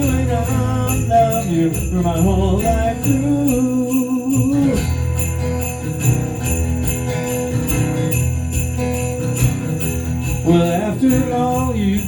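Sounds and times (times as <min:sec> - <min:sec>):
sleigh bells shaken: 0:00.0 - 0:12.0
live band music: 0:04.6 - 0:11.7.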